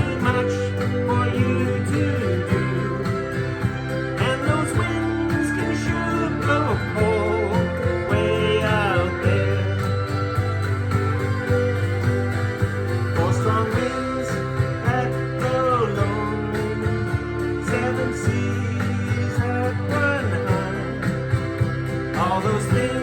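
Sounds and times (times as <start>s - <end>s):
country acoustic guitar music: 0.0s - 23.0s.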